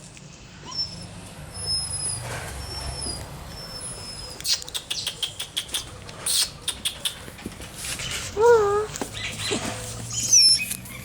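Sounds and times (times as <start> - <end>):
puppy squeaking: 0.6 - 11.0
clicks and scuffles: 7.1 - 11.0.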